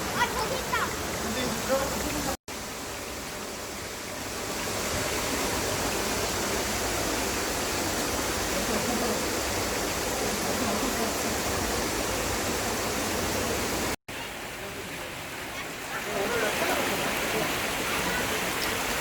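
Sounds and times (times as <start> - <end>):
stream rushing over rocks: 0.0 - 19.0.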